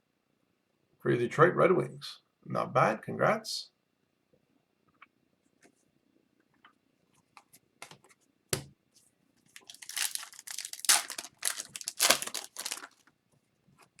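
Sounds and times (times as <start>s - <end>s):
foil wrapper tearing and crinkling: 9.5s - 13.1s.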